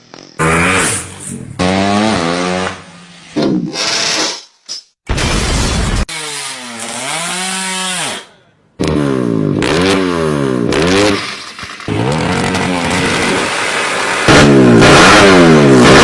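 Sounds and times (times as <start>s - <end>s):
motorcycle engine revving: 0.0s - 4.1s, 8.8s - 16.0s.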